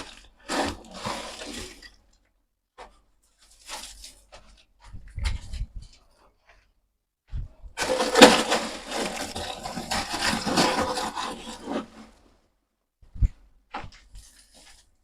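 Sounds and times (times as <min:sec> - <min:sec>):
scraping of dry loose material: 0:00.0 - 0:01.9, 0:07.8 - 0:12.3.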